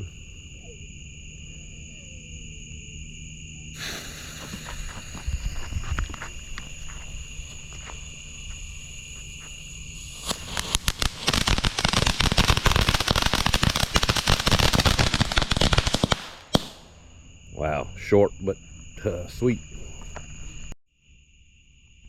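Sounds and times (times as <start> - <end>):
crickets chirping: 0.0 - 22.0
firework pop: 3.8 - 5.2
firework fountain crackling: 3.8 - 17.0.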